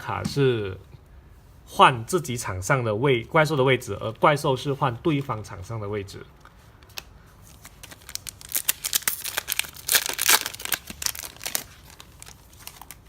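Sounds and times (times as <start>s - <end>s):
foil wrapper crinkling and tearing: 7.5s - 13.0s.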